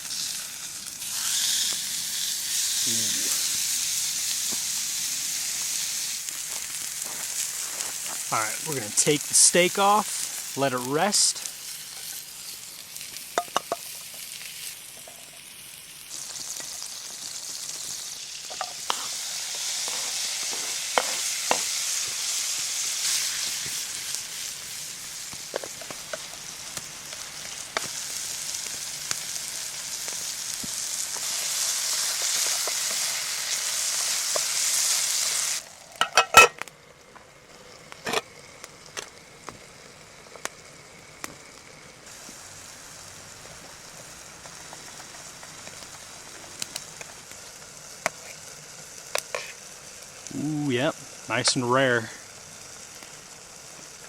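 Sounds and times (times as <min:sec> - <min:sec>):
food sizzling in a pan: 0:00.0 - 0:54.0.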